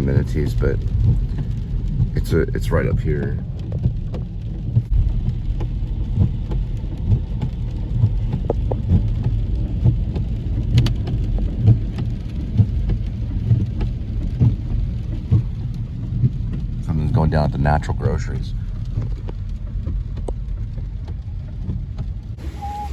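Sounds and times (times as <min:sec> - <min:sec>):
soft low thumps: 0:00.0 - 0:16.9
road and engine rumble: 0:00.0 - 0:22.9.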